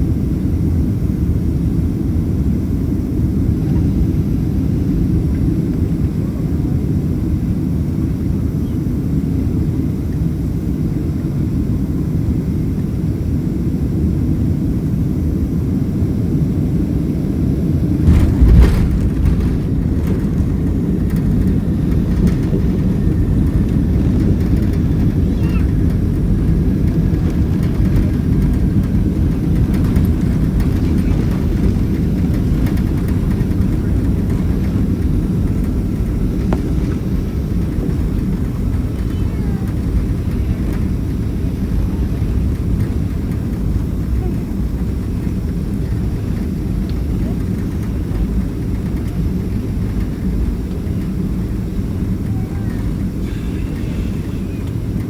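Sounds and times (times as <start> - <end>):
airliner cabin engine rumble: 0.0 - 55.0
thump and rattle: 18.0 - 22.8.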